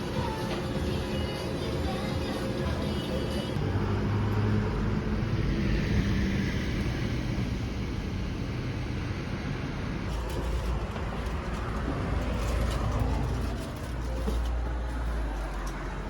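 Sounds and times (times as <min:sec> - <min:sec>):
road noise: 0:00.0 - 0:16.0
vehicle engine rumble: 0:03.3 - 0:16.0.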